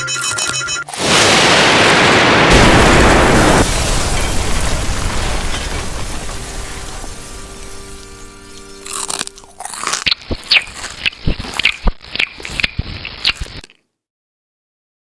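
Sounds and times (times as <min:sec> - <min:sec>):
cartoon explosion: 0:00.9 - 0:08.0.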